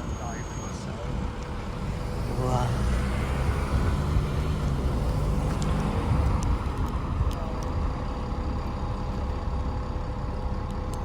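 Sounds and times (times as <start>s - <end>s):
faint steady whine: 0.0s - 2.6s
bus engine rumbling: 0.0s - 11.0s.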